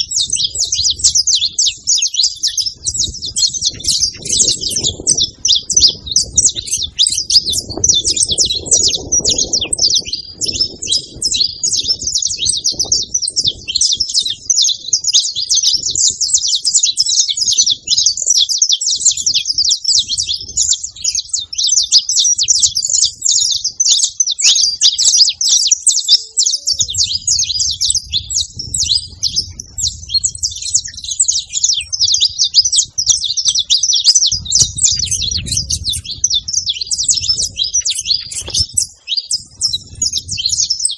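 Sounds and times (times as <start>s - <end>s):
finch singing chirps and trills: 0.0s - 40.9s
low rumble: 34.3s - 38.6s.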